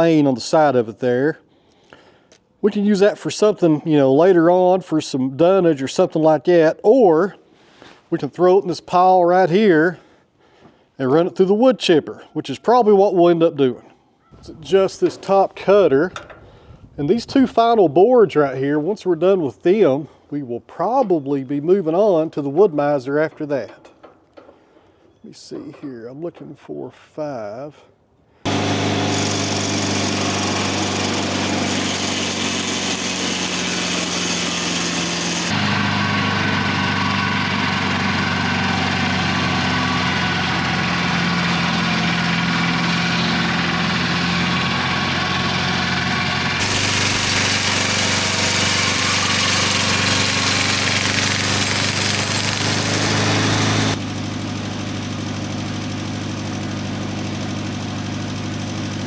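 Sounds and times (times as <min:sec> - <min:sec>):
sawmill engine sawing boards: 0:28.5 - 0:59.0.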